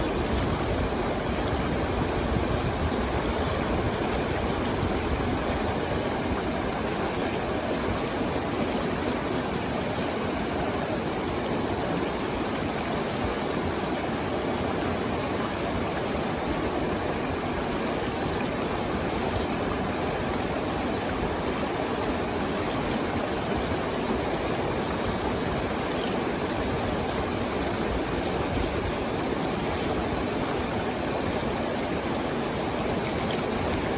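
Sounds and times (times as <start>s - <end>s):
stream water flowing: 0.0s - 33.9s.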